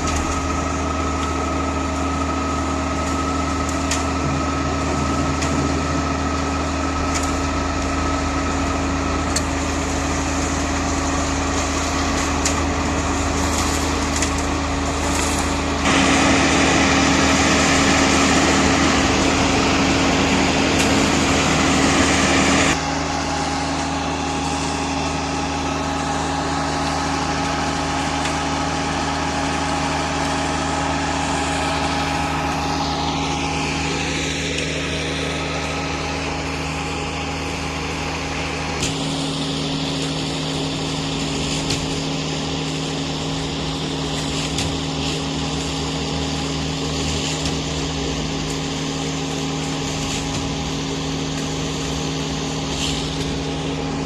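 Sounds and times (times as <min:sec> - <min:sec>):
diesel engine running: 0:00.0 - 0:54.0
loud rushing noise: 0:12.2 - 0:27.2.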